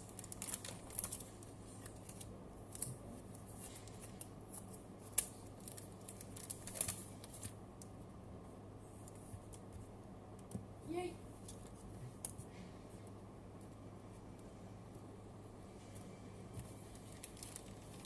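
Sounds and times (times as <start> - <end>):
card packs clicking and rustling: 3.8 - 7.6, 17.0 - 18.0.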